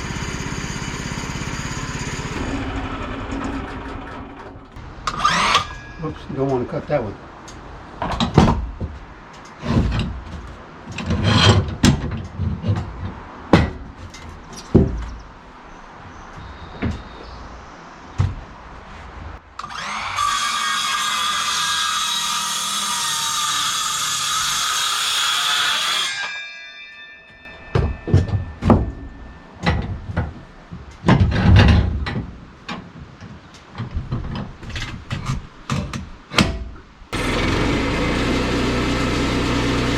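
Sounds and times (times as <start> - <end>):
power saw cutting: 0.0 - 7.1, 19.6 - 26.4, 37.2 - 39.9.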